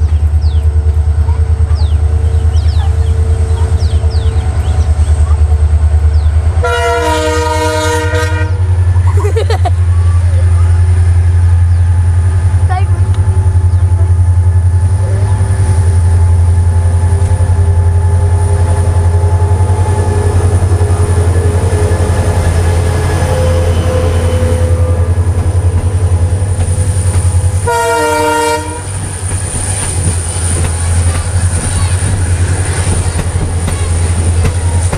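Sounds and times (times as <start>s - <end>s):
diesel train passing: 0.0s - 34.9s
train horn blast: 6.6s - 8.8s, 18.2s - 25.7s, 27.6s - 29.1s.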